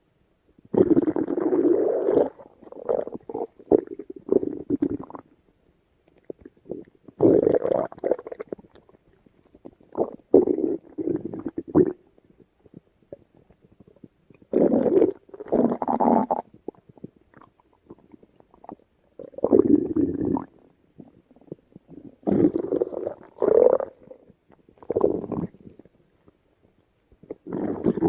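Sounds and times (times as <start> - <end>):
stomach rumbling: 0.6 - 28.0.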